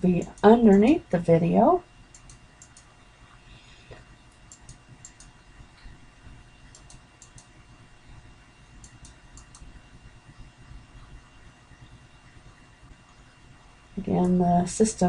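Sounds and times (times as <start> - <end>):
faint electrical hum: 0.0 - 15.0
computer mouse clicking: 0.2 - 0.9, 2.1 - 2.9, 4.4 - 5.4, 6.7 - 7.5, 8.8 - 9.8.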